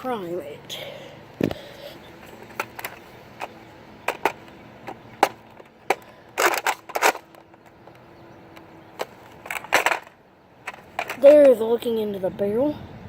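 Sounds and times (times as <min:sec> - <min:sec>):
plastic blaster clicks and clacks: 0:05.2 - 0:07.6.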